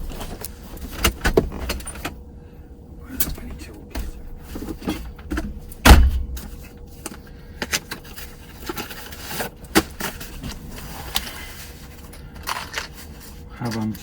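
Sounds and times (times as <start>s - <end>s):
loud thump: 5.8s - 6.4s.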